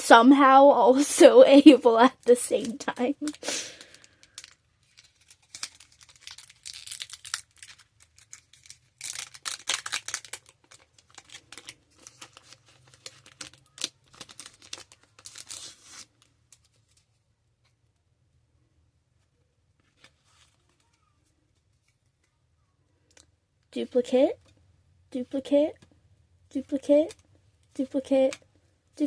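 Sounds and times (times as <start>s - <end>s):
foil wrapper crackling and tearing: 2.6s - 16.6s.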